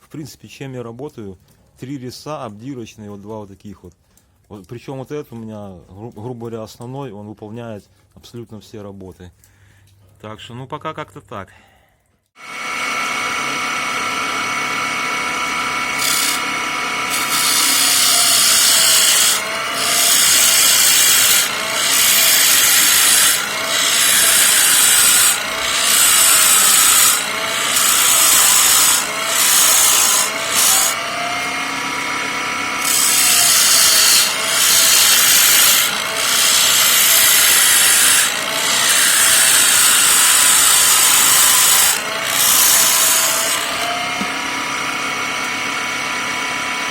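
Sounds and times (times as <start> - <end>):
lathe motor hum: 12.4 - 46.9
chisel rasping on wood: 16.0 - 31.0, 32.8 - 44.4.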